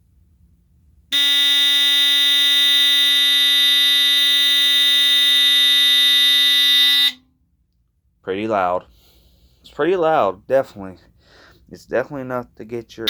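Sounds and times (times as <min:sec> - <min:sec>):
smoke detector buzzer alarm: 0:01.1 - 0:07.2.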